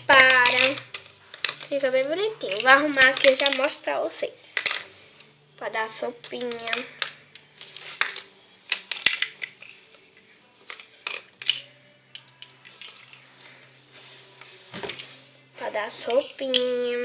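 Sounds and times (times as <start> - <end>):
toy cutlery clicking and tapping: 0.0 - 3.8, 4.5 - 4.9, 6.2 - 9.8, 10.6 - 13.2, 15.9 - 17.0.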